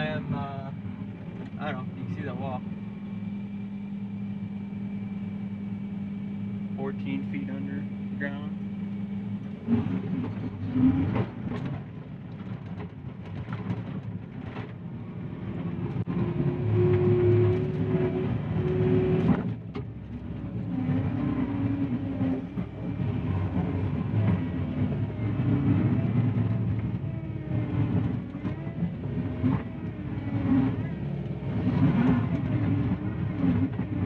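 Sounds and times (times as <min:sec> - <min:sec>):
machine whine: 0:00.0 - 0:14.1
diesel engine under load: 0:00.0 - 0:34.0.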